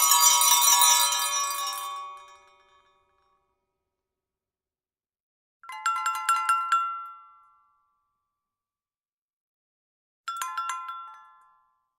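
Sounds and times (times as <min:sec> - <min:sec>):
small bell rapid strikes: 0:00.0 - 0:02.6.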